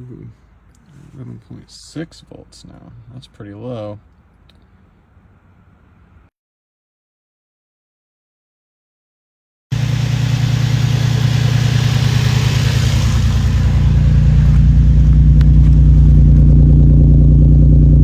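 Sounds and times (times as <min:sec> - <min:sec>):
car engine idling and misfiring: 0:09.7 - 0:18.0.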